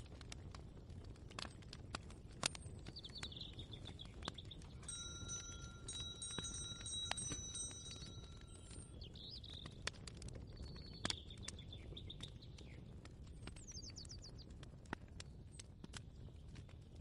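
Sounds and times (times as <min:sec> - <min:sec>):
bird chirping: 0:02.9 - 0:09.8
chime ringing: 0:04.8 - 0:08.8.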